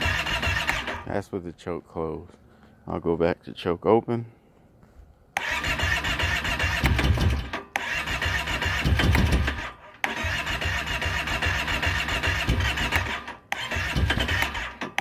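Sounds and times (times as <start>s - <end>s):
engine cranking on starter: 0.0s - 1.2s, 5.4s - 15.0s.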